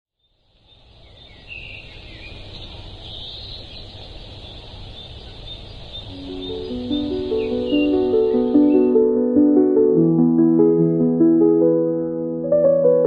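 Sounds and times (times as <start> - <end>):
birds chirping: 0.2 - 9.2
soft music notes: 6.1 - 13.0.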